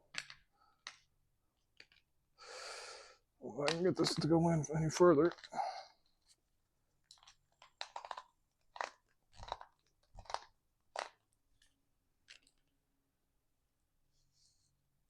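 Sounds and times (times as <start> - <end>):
plastic cable clamp crunching: 7.1 - 11.2.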